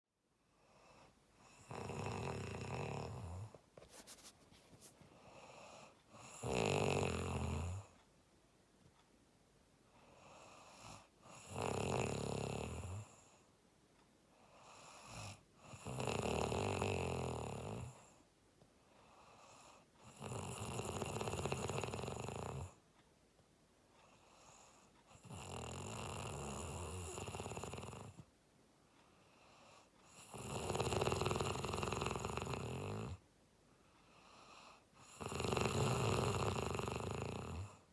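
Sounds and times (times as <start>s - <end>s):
quiet breath: 0.3s - 8.1s, 9.8s - 11.5s, 12.6s - 13.6s, 14.2s - 16.0s, 16.6s - 20.4s, 23.8s - 25.3s, 26.6s - 30.3s, 31.2s - 35.3s
person snoring: 1.4s - 3.5s, 5.4s - 7.9s, 10.3s - 13.1s, 14.7s - 18.0s, 20.0s - 22.8s, 24.4s - 28.2s, 30.1s - 33.2s, 35.0s - 37.8s.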